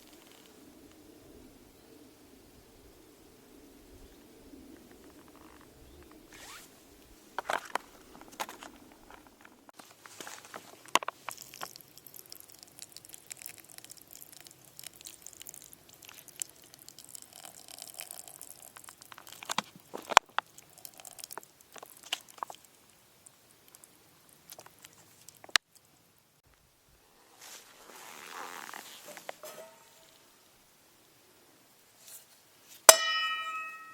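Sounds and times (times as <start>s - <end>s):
soft rustling: 4.8s - 11.8s, 26.5s - 30.3s.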